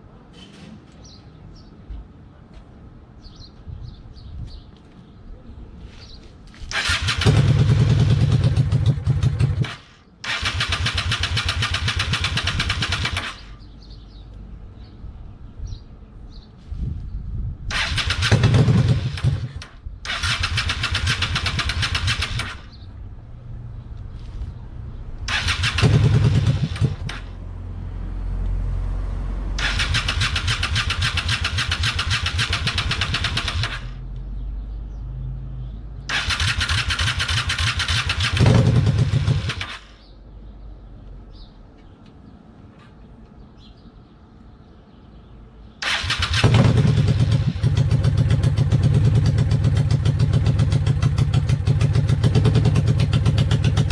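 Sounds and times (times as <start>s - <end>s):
motorcycle electric starter cranking: 6.7s - 13.5s, 17.7s - 22.8s, 25.3s - 27.3s, 29.6s - 34.0s, 36.1s - 39.9s, 45.8s - 47.9s.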